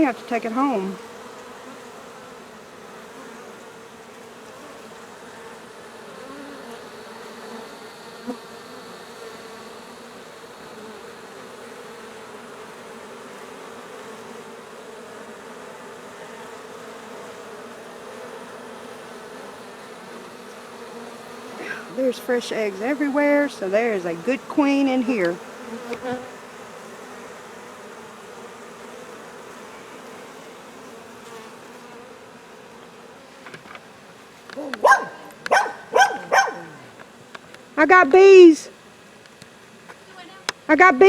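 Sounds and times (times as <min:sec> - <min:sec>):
bees buzzing: 0:00.0 - 0:41.0.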